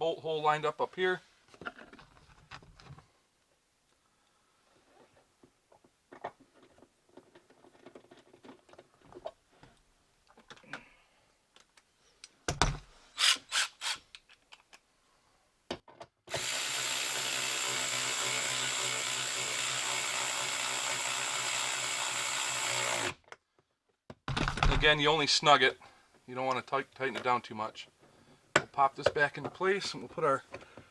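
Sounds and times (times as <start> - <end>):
parts clicking and knocking: 11.6 - 12.9, 24.1 - 25.0
cordless power driver running: 16.3 - 23.2.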